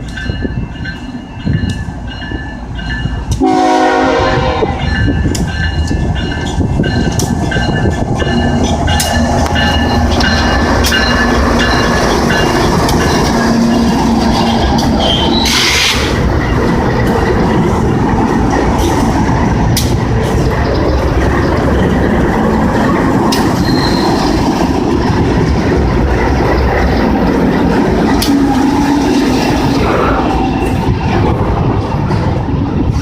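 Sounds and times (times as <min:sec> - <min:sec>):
freight train wheels rumbling: 0:00.0 - 0:33.0
high wheel squeal: 0:07.6 - 0:16.7, 0:23.4 - 0:24.4.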